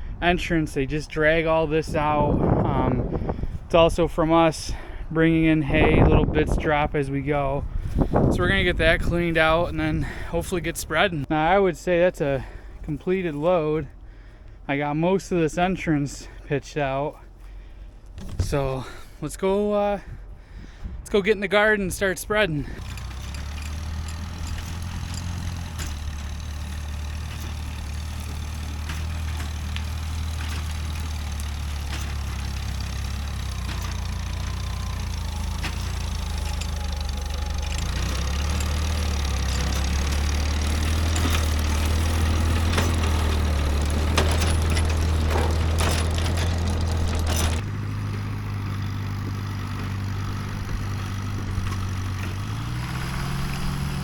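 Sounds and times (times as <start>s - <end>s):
tractor engine running: 0.0s - 54.0s
rattling knocks: 22.8s - 54.0s.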